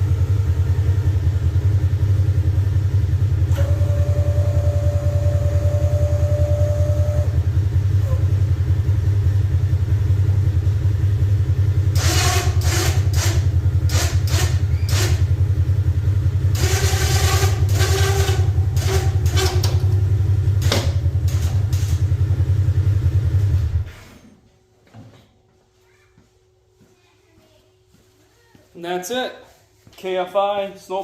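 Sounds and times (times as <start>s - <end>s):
vehicle engine idling: 0.0s - 24.0s
actuator and winch motor whirring: 3.4s - 7.4s, 11.9s - 15.3s, 16.5s - 20.0s.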